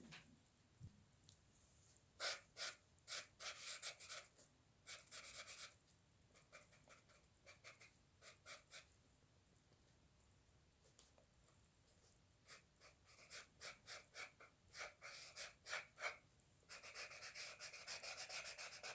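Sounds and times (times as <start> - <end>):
pen scratching on drawing surface: 2.2 - 5.8, 6.4 - 8.9, 12.5 - 18.9.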